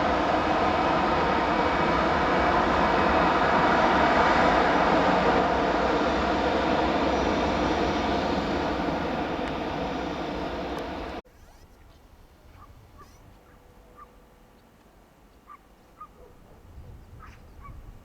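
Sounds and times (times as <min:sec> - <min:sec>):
airliner engines passing: 0:00.0 - 0:11.2.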